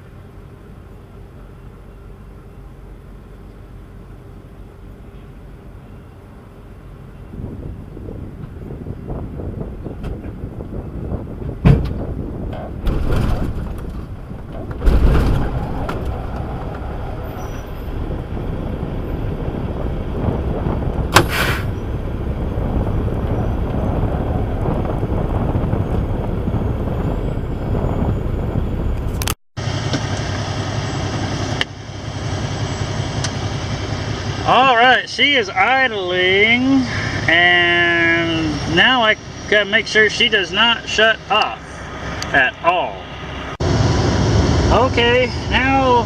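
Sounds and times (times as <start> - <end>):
diesel truck engine running: 0.0 - 46.0
loud knocks: 11.6 - 16.2
air hiss: 21.2 - 21.7.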